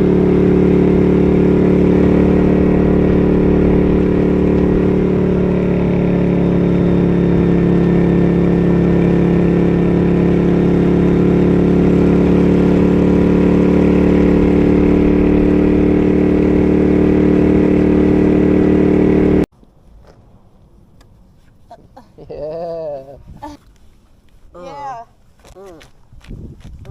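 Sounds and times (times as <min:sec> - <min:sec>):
motorcycle engine running steadily: 0:00.0 - 0:19.5.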